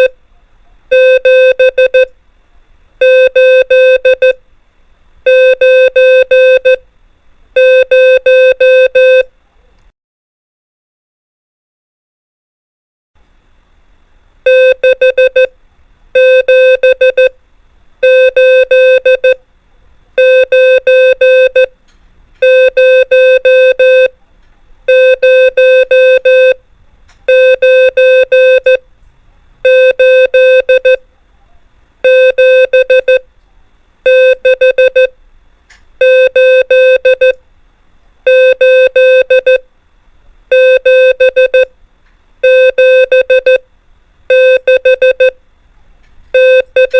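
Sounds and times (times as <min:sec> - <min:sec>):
morse code beeps: 0:00.9 - 0:02.1, 0:03.0 - 0:04.4, 0:05.3 - 0:06.8, 0:07.6 - 0:09.3, 0:14.5 - 0:15.5, 0:16.2 - 0:17.3, 0:18.0 - 0:19.4, 0:20.2 - 0:21.7, 0:22.4 - 0:24.2, 0:24.9 - 0:26.6, 0:27.3 - 0:28.8, 0:29.6 - 0:31.0, 0:32.0 - 0:33.2, 0:34.1 - 0:35.1, 0:36.0 - 0:37.4, 0:38.3 - 0:39.6, 0:40.5 - 0:41.7, 0:42.4 - 0:43.6, 0:44.3 - 0:45.4, 0:46.4 - 0:46.9.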